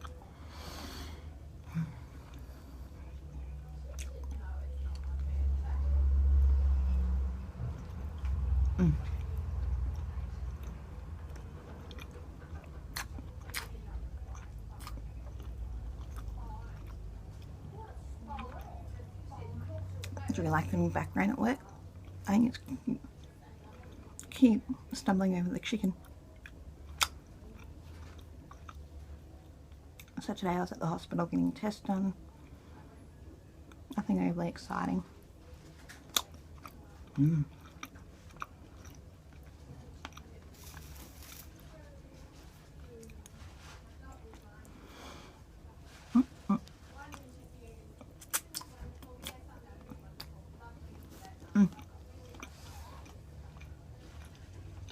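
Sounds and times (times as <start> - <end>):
person chewing food: 0.0 - 5.2, 7.6 - 17.6, 25.9 - 30.2, 35.5 - 41.7, 45.9 - 54.9
low hum: 0.0 - 23.2
person humming briefly: 8.8 - 9.2.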